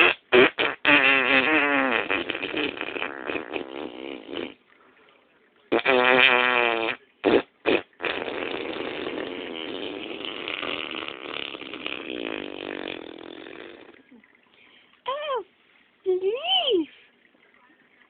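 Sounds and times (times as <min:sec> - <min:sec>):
rattling fart: 0:00.0 - 0:04.6, 0:05.7 - 0:14.1
short fart blasts: 0:00.0 - 0:04.6, 0:05.7 - 0:14.1.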